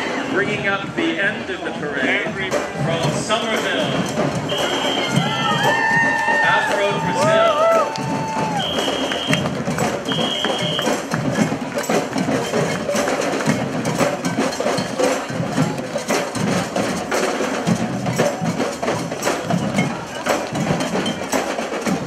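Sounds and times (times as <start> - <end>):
street band drums and percussion: 0.0 - 22.0.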